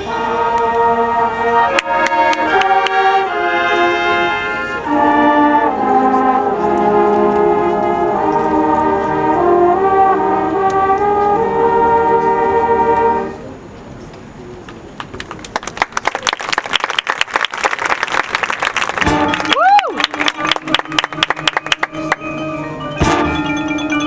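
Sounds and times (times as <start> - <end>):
marching band brass chords: 0.0 - 13.4, 18.9 - 24.0
sharp percussion hits: 19.0 - 24.0.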